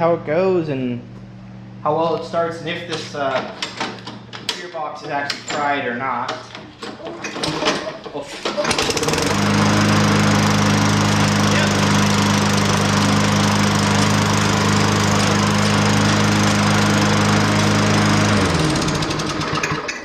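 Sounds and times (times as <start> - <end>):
lawn mower engine running: 7.3 - 20.0.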